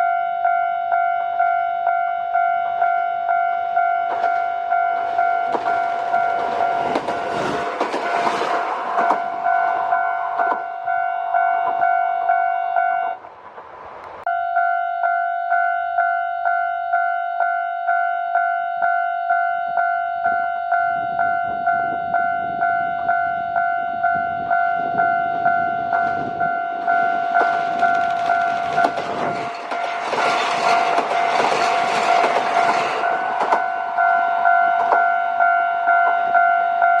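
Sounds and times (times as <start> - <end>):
level crossing bell clanging: 0.0 - 13.2, 19.9 - 37.0
diesel train rumble: 1.0 - 14.3, 20.9 - 37.0
wheel clicks over rail joints: 4.0 - 10.6, 26.8 - 35.2.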